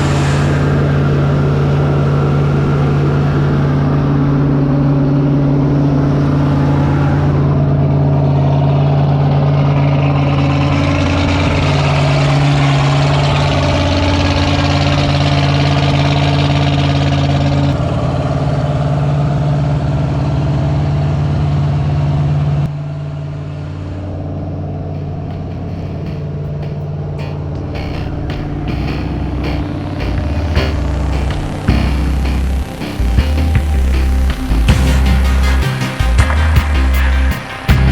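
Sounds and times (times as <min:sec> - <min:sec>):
boat engine running: 0:00.0 - 0:37.9.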